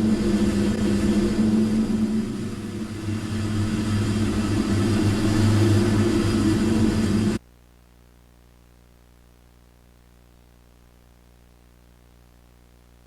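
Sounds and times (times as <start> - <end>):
loud rumbling drone: 0.0 - 7.4
faint low hum: 0.0 - 13.0.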